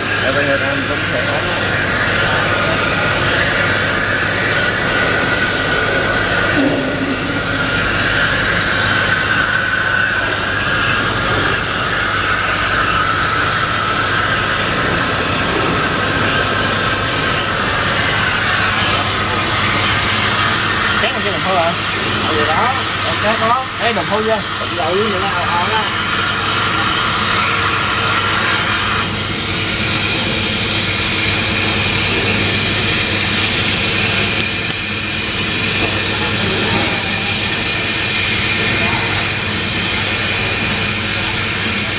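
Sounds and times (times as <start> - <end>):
wire-cutting machine whirring: 0.0 - 41.9.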